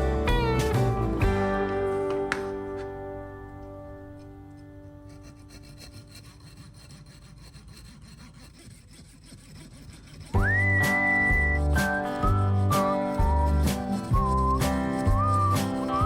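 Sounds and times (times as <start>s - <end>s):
background music: 0.0s - 5.8s, 10.4s - 16.0s
faint scraping by hand: 4.0s - 16.0s.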